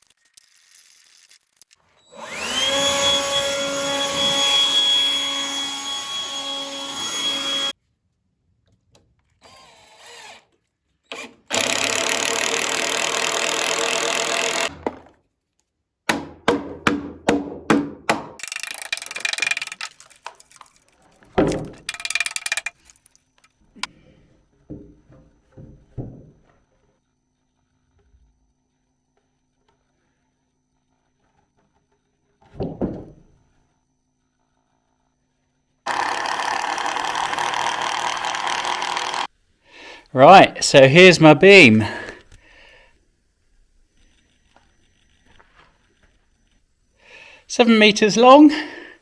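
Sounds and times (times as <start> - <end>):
electric drill into timber: 2.1 - 7.8, 9.4 - 10.5, 11.1 - 14.7, 18.4 - 20.9, 21.5 - 23.1, 35.9 - 39.3
sharp knocks and clicks: 17.7 - 23.2.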